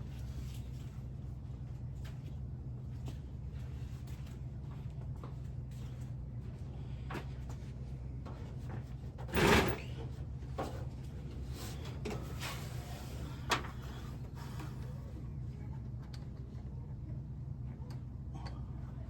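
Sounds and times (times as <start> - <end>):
scraping clatter: 9.2 - 10.0.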